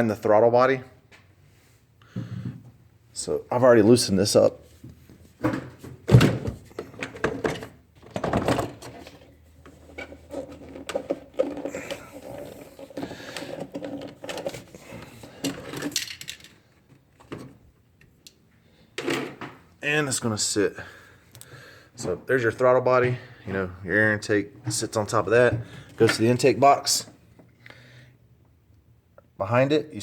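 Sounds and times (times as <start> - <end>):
scraping and rubbing: 8.8 - 16.0.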